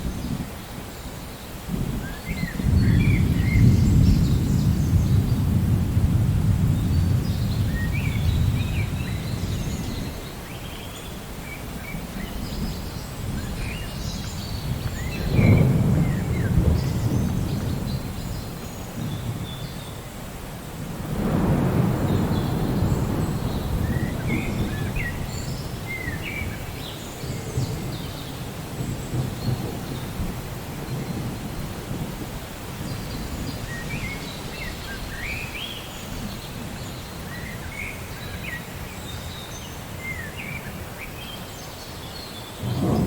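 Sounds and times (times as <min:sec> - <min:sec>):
thunder rumbling: 0:01.7 - 0:10.2, 0:12.1 - 0:19.6, 0:20.8 - 0:35.6, 0:42.6 - 0:43.0.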